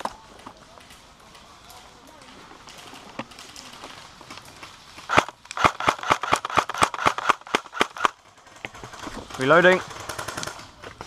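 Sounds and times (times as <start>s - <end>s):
airsoft rifle rapid firing: 5.1s - 10.7s.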